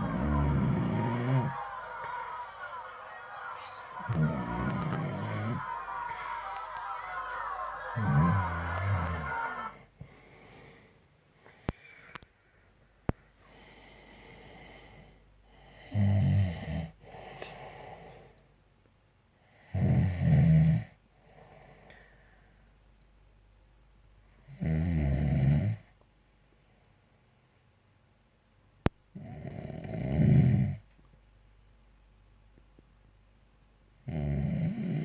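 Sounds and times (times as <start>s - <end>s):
man snoring loudly: 0.0s - 1.5s
quiet breaths: 0.0s - 18.7s, 20.8s - 23.2s, 25.7s - 27.9s.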